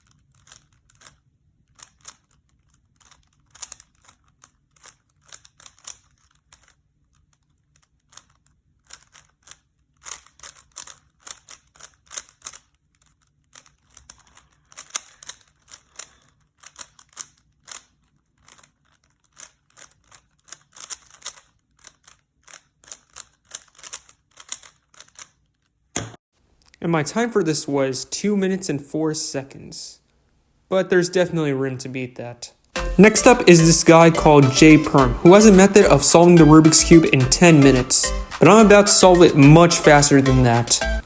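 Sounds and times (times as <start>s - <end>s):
plastic puzzle cube clicking: 0.0s - 25.7s.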